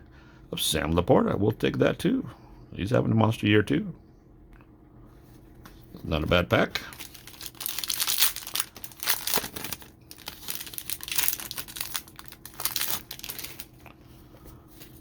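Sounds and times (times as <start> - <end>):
plastic wrapper crinkling and tearing: 6.8 - 14.0.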